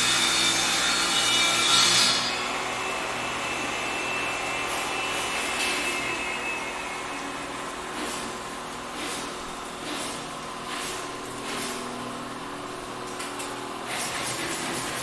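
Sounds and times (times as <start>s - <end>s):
electric saw cutting wood: 0.0s - 7.5s.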